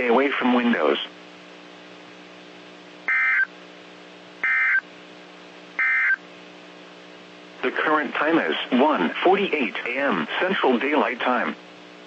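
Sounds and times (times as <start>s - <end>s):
steady low hum: 0.0s - 12.0s
warbling digital data tones: 3.1s - 3.5s, 4.4s - 4.8s, 5.8s - 6.2s.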